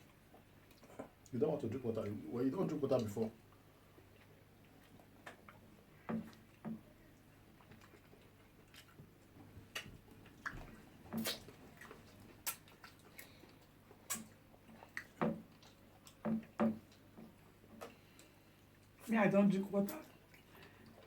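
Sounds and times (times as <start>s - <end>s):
people chewing with mouth smacks: 0.0s - 19.1s, 19.8s - 21.0s.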